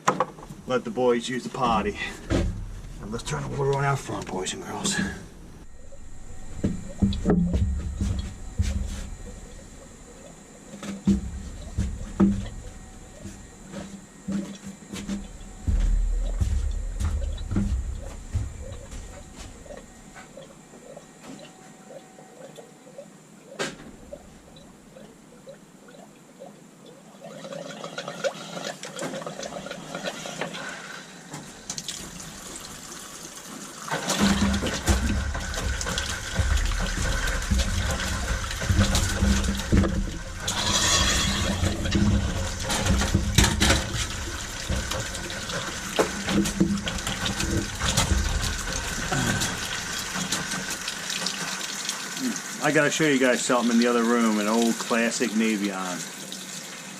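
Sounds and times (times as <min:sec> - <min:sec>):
water running through pipes: 0:00.0 - 0:56.9
pipe clicks and knocks: 0:05.7 - 0:21.5, 0:34.1 - 0:40.5, 0:41.6 - 0:51.4.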